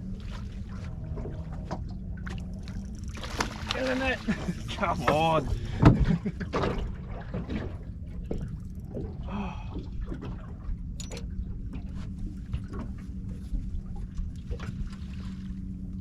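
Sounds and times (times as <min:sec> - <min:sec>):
water slapping: 0:00.0 - 0:10.8
light knocks and clicks from hull: 0:00.0 - 0:16.0
low hum and rumble: 0:00.0 - 0:16.0.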